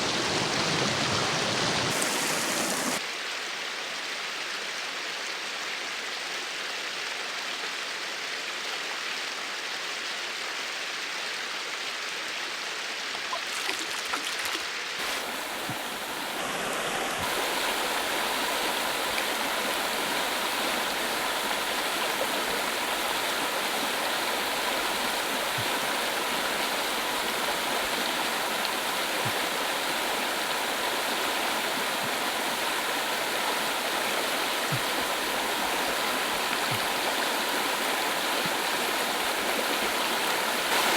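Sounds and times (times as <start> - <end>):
stream rushing: 0.0 - 3.1, 12.9 - 40.9.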